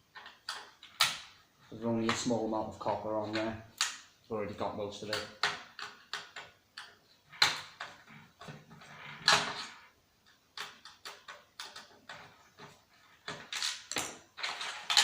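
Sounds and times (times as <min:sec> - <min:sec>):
plastic and metal parts clattering: 0:05.1 - 0:09.9, 0:10.5 - 0:15.0.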